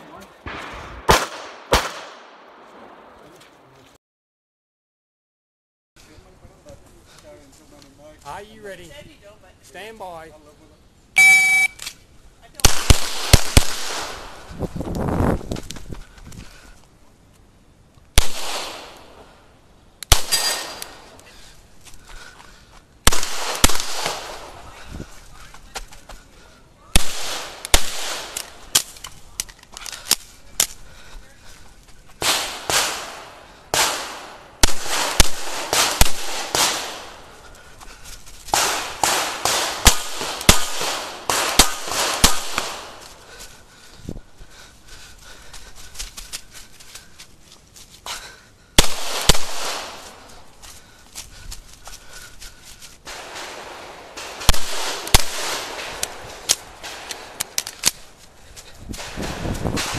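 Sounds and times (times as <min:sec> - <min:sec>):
pistol shots: 0:00.2 - 0:03.2, 0:12.6 - 0:14.2, 0:18.2 - 0:19.1, 0:20.1 - 0:21.1, 0:23.1 - 0:24.6, 0:27.0 - 0:29.0, 0:32.2 - 0:37.2, 0:38.5 - 0:43.0, 0:48.8 - 0:50.1, 0:53.1 - 0:58.0.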